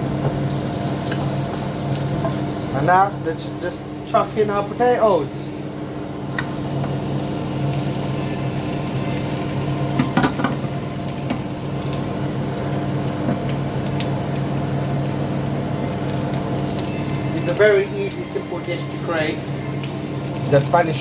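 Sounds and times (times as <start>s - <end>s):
onions and potatoes sizzling in pan: 0.0s - 21.0s
steady low hum: 0.0s - 21.0s.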